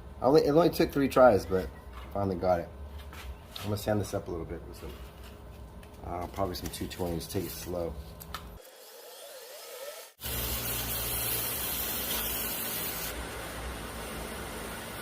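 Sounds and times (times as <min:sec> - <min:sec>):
sandpaper hissing on spinning wood: 0:08.9 - 0:13.2.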